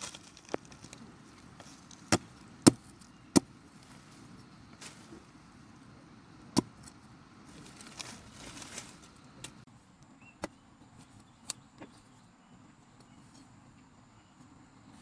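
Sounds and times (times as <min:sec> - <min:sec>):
rustling: 0:00.0 - 0:05.4, 0:06.6 - 0:09.6.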